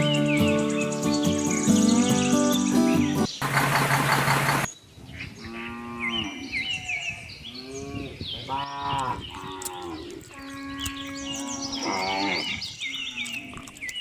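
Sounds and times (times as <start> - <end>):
birds chirping: 0.0 - 14.0
cattle mooing: 7.7 - 13.2.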